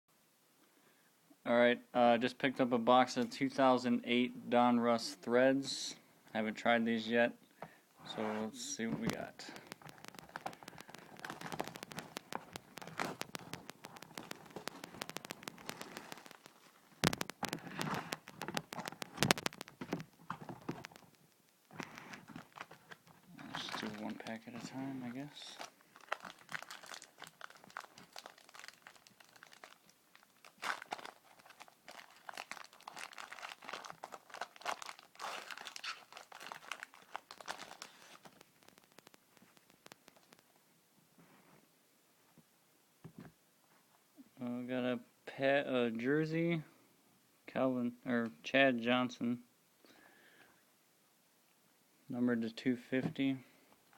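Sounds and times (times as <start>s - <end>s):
packaging crackling and clicking: 9.0s - 24.8s, 25.4s - 40.5s
foil wrapper crinkling and tearing: 9.0s - 40.5s.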